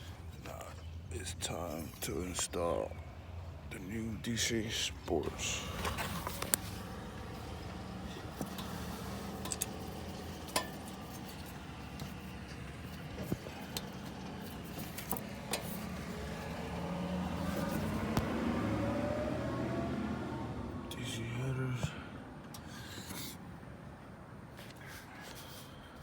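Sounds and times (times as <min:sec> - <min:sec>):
steady low hum: 0:00.0 - 0:19.4.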